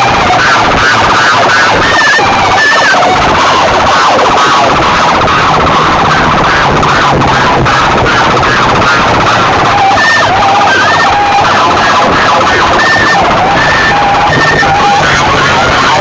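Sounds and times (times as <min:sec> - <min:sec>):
distorted siren sound effect: 0:00.0 - 0:16.0.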